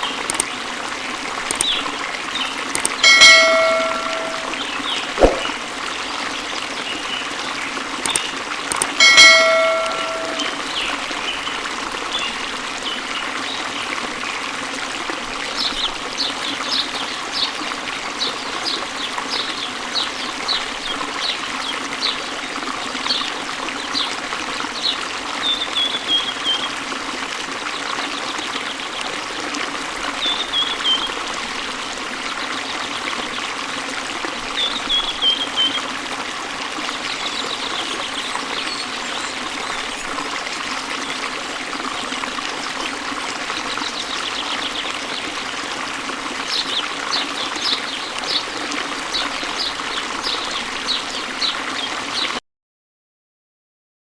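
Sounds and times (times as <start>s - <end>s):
waterfall running: 0.0s - 52.3s
bird calling: 3.0s - 5.6s.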